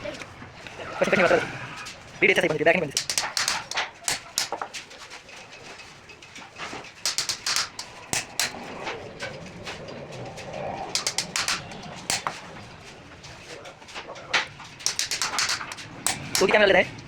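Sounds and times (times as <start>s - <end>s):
sharp clicks or taps: 2.9s - 4.7s, 7.0s - 8.6s, 11.0s - 12.4s, 14.8s - 16.6s
pigeons cooing: 7.8s - 14.8s.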